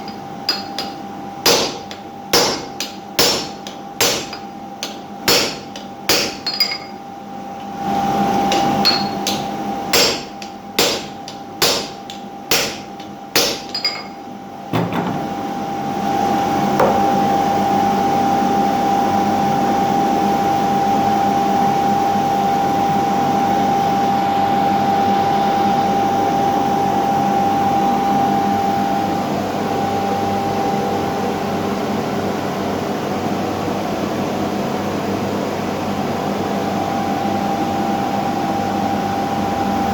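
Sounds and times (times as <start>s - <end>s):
hammer striking steel on anvil: 0.0s - 7.0s, 8.4s - 14.2s
machine hum with whine: 0.0s - 39.9s.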